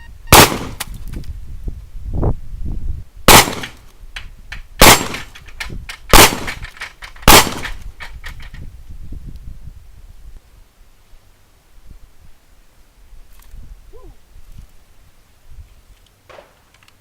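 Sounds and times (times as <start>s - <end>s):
gunshots: 0.3s - 0.8s, 3.3s - 3.8s, 4.8s - 5.3s, 6.1s - 6.6s, 7.2s - 7.8s, 16.3s - 16.6s.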